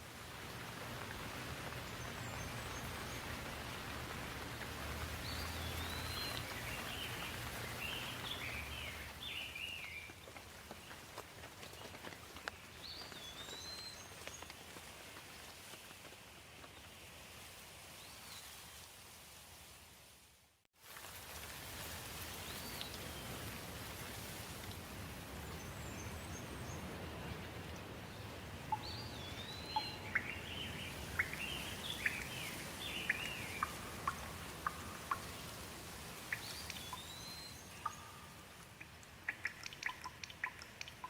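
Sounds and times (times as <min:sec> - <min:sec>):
steady rain: 0:00.0 - 0:41.0
songbirds chirping: 0:00.5 - 0:14.9, 0:25.3 - 0:41.0
quick sharp ticks: 0:38.7 - 0:41.0.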